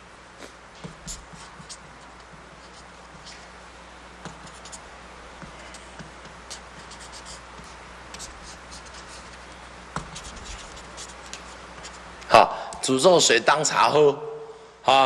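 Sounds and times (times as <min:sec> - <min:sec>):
low hum and hiss: 0:00.0 - 0:15.0.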